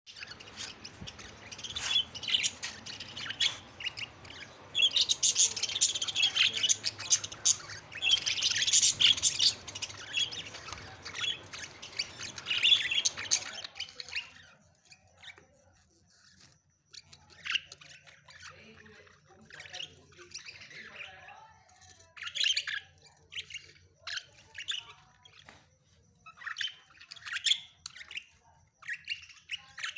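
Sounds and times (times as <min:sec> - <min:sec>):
budgerigars chattering: 0:00.1 - 0:14.6, 0:16.9 - 0:21.3.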